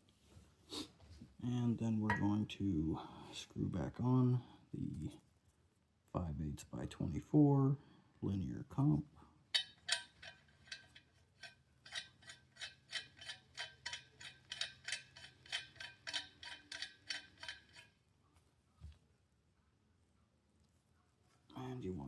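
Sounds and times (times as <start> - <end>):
metal clicking: 9.6 - 17.9.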